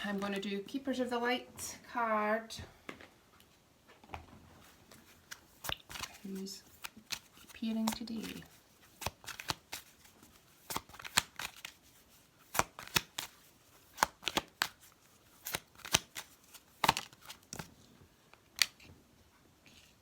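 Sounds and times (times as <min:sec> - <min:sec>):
cards being shuffled: 0:04.6 - 0:17.9, 0:18.5 - 0:18.9.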